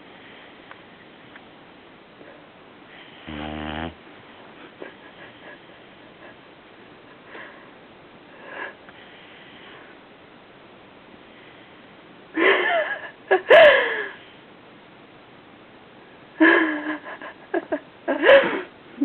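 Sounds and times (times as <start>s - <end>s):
puppy snoring: 2.9s - 4.0s.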